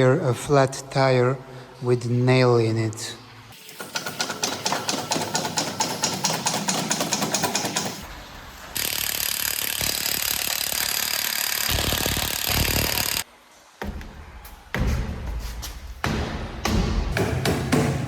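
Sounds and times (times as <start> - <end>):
power tool hammering: 3.8 - 8.1.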